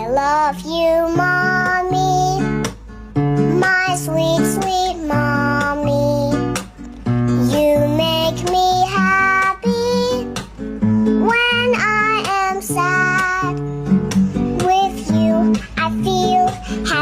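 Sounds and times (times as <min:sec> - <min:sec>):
child-like voice singing: 0:00.0 - 0:02.6, 0:03.5 - 0:06.6, 0:07.4 - 0:10.3, 0:11.2 - 0:13.6, 0:14.5 - 0:17.0
guitar accompaniment: 0:00.0 - 0:17.0.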